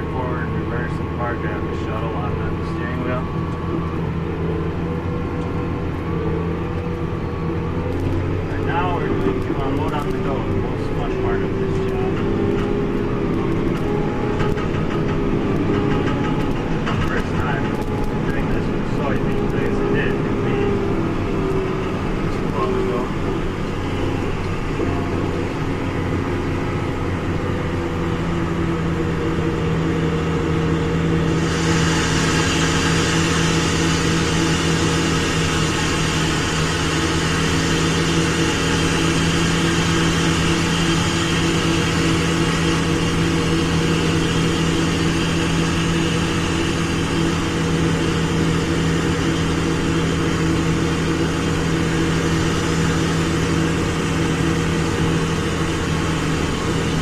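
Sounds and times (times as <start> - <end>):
diesel engine running: 0.0 - 57.0
high whirring hiss: 31.1 - 57.0.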